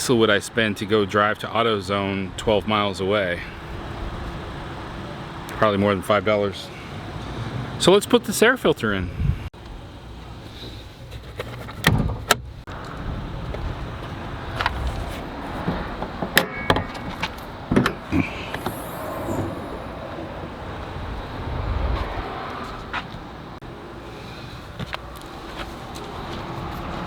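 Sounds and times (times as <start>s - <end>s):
low outdoor hum: 9.2s - 27.0s.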